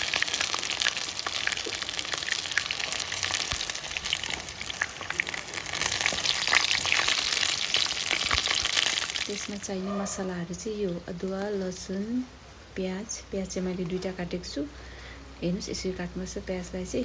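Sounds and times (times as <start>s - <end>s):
chicken frying in hot oil: 0.0s - 9.8s.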